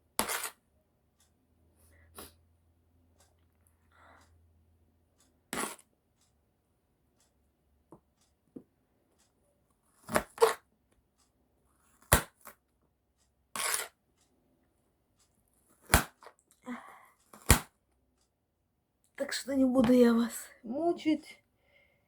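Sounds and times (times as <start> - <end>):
knife scraping rasp: 0.2 - 0.6, 5.5 - 5.8, 13.5 - 14.0.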